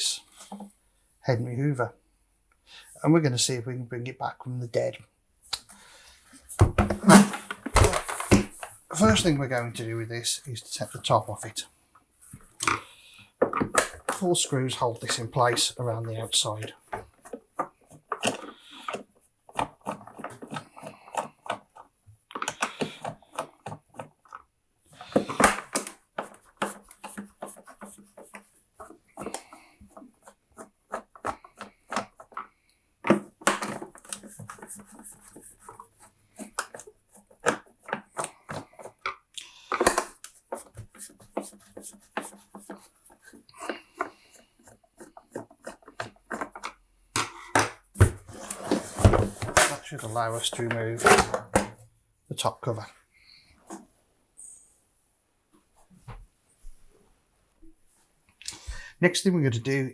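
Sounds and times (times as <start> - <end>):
hard plastic scraping: 5.7 - 11.6, 12.2 - 51.9, 52.7 - 54.6
screwdriver clicking and scraping: 19.6 - 24.4, 50.6 - 51.8
tools clicking and knocking: 25.1 - 35.8, 50.7 - 51.8.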